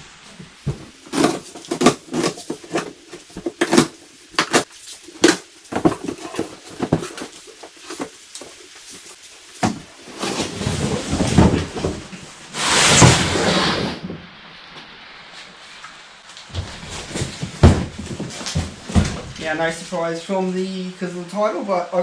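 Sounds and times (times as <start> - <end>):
cardboard crackling and clattering: 0.5 - 14.3, 16.3 - 19.9
packaging rustling: 0.7 - 12.2, 16.3 - 19.9.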